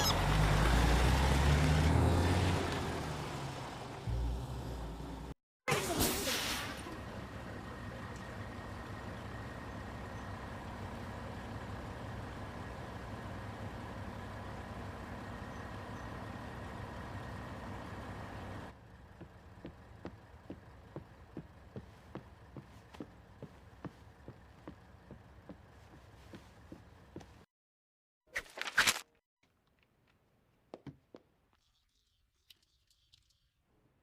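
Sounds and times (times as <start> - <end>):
vehicle engine idling: 6.8 - 27.5.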